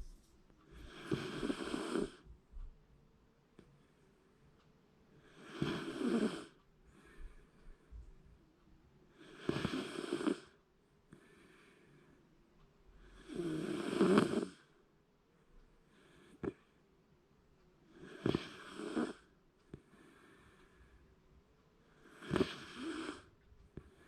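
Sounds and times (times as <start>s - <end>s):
dog snoring: 0.7s - 2.3s, 5.2s - 7.1s, 9.1s - 10.6s, 13.1s - 14.7s, 17.9s - 19.3s, 22.0s - 23.3s.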